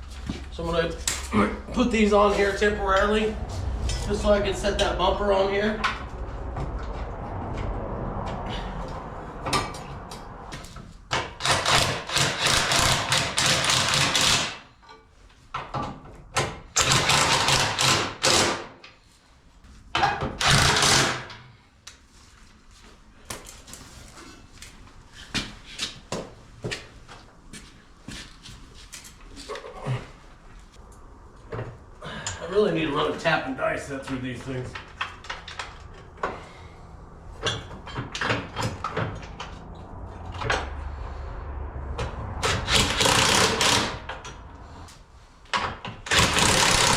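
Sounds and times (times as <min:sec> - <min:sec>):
power tool driving bolts: 0:11.1 - 0:14.6, 0:16.4 - 0:18.9, 0:20.3 - 0:21.4, 0:42.4 - 0:44.3, 0:45.6 - 0:46.9.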